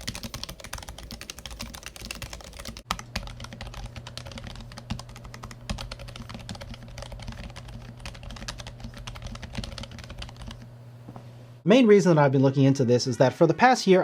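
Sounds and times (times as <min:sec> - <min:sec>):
keyboard typing: 0:00.0 - 0:10.7
faint low hum: 0:00.0 - 0:13.7.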